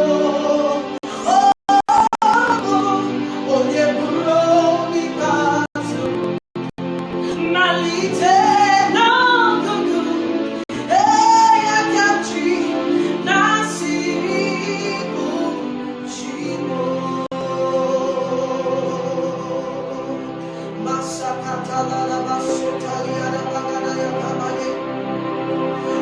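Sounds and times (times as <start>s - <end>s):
woman singing gospel song: 0.0s - 6.1s, 7.3s - 20.1s
sustained instrumental backing: 0.0s - 26.0s.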